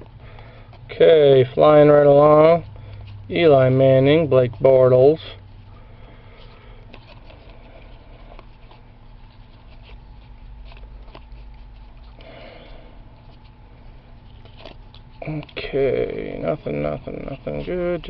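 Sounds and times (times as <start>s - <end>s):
steady low hum: 0.0s - 18.0s
trading cards flicking and sliding: 6.4s - 18.0s.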